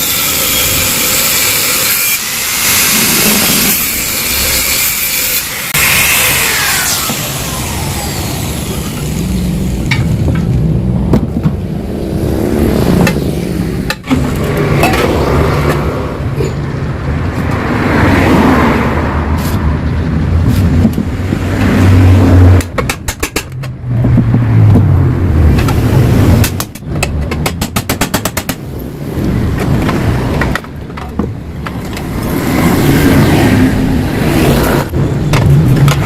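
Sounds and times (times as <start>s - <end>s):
power tool cutting steel: 0.0s - 10.3s.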